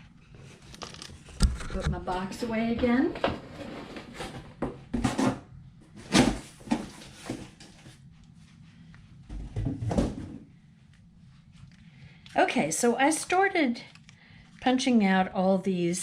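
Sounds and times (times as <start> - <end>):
box knocks and clunks: 9.3 - 10.4.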